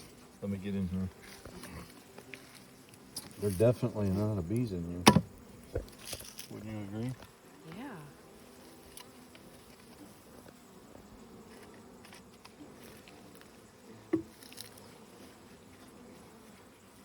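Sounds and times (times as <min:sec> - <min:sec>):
bees buzzing: 0:00.0 - 0:17.0
sharp knock: 0:05.0 - 0:05.3.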